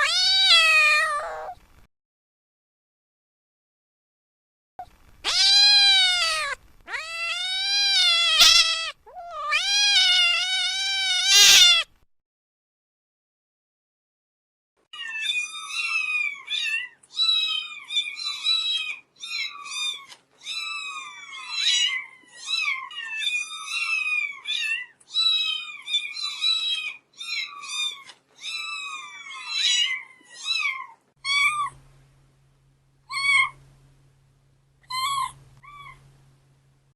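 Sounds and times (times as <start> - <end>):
cat meowing: 0.0 - 1.6, 5.2 - 11.9, 33.1 - 33.6.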